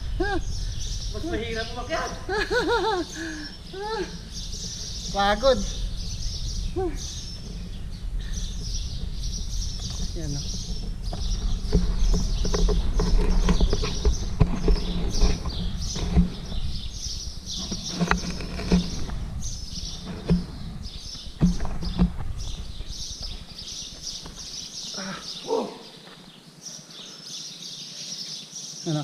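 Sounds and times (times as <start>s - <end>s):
wind rumble on microphone: 0.0s - 24.6s
footsteps on rock: 8.4s - 24.8s.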